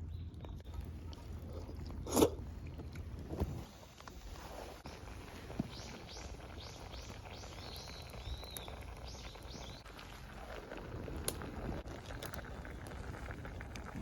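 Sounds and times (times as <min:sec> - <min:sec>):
small bird chirping: 0:04.8 - 0:09.8.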